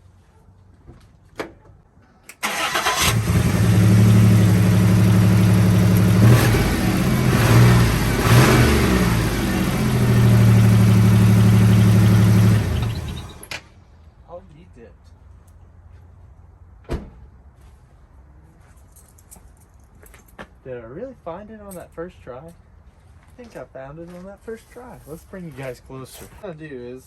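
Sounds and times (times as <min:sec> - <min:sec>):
car engine starting and idling roughly: 0:02.4 - 0:13.5.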